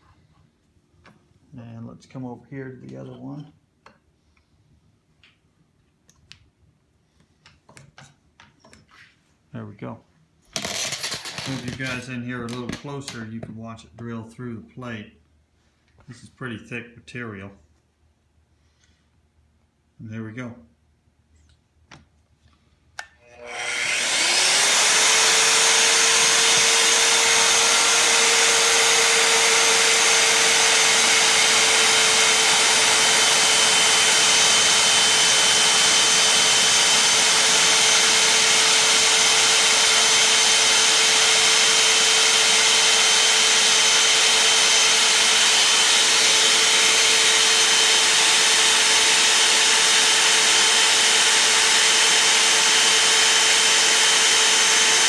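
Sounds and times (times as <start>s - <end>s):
drill motor whining: 10.6s - 12.1s, 23.2s - 55.0s.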